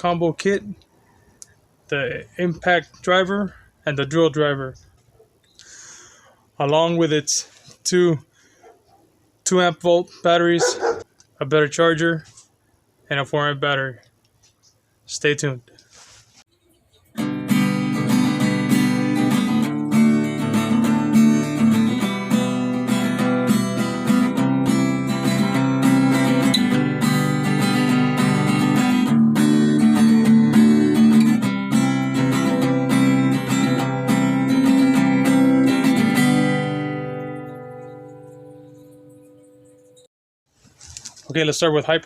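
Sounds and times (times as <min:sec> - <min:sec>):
strummed acoustic guitar: 0:17.1 - 0:40.1.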